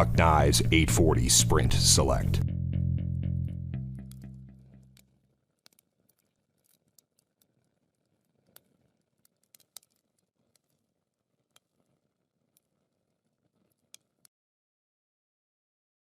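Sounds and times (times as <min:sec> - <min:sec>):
guitar music: 0:00.0 - 0:05.0
faint clicks: 0:04.9 - 0:10.8.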